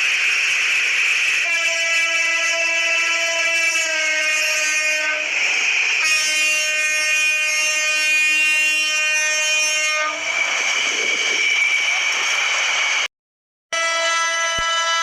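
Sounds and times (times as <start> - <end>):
toy train horn: 1.4 - 5.3, 6.0 - 10.3, 13.7 - 15.0.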